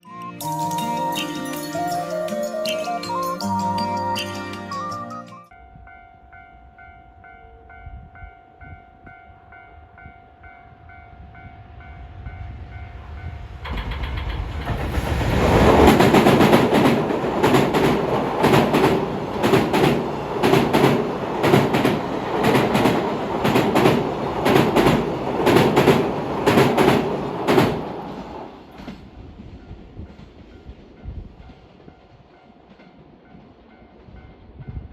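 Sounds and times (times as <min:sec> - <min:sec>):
train wheels clattering over rail joints: 0:13.6 - 0:29.1.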